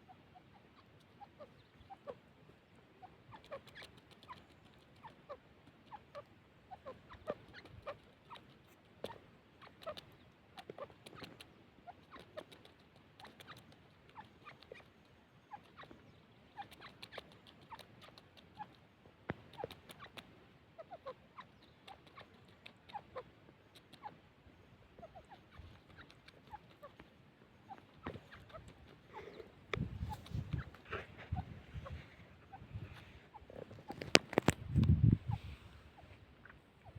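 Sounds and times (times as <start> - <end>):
birds chirping and clucking: 0.0 - 36.9.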